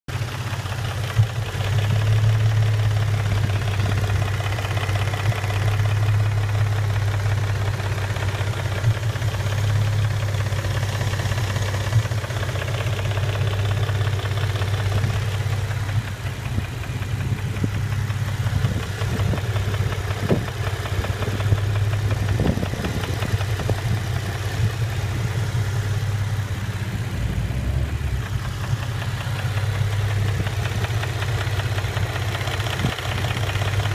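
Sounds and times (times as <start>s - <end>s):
car engine idling with knocking: 0.1s - 33.9s.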